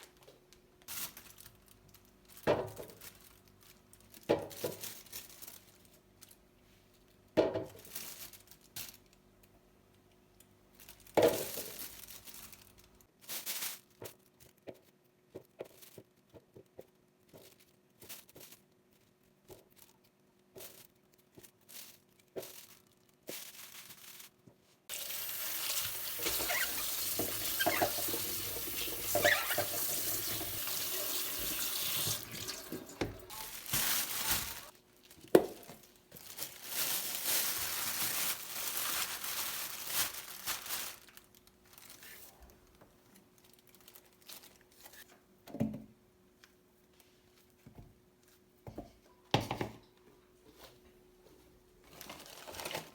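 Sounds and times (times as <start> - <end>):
tap water running into sink: 24.9 - 33.4
kitchen items knocking and clicking: 26.2 - 35.8, 48.7 - 49.9.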